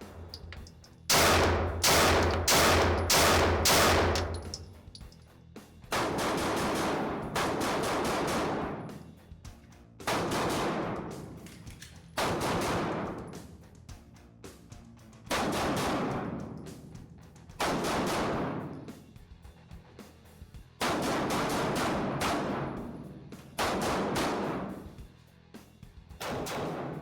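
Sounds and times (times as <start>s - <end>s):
pistol shots echoing: 0.0s - 4.8s, 6.0s - 8.8s, 10.1s - 11.2s, 12.2s - 13.3s, 20.9s - 23.0s, 23.6s - 24.8s.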